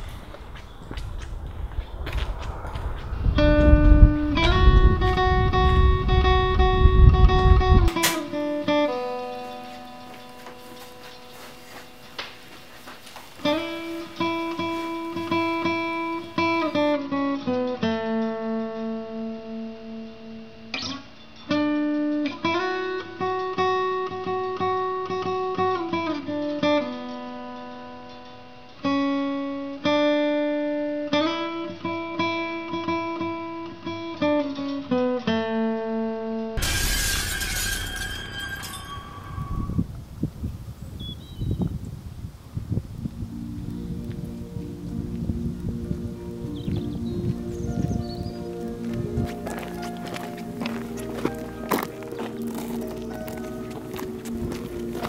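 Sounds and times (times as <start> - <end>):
acoustic guitar strumming chords: 4.4 - 12.5, 43.4 - 55.0.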